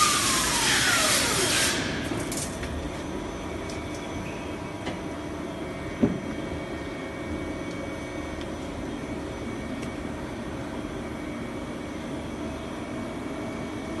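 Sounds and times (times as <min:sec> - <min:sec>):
lathe machine hum: 0:00.0 - 0:02.1.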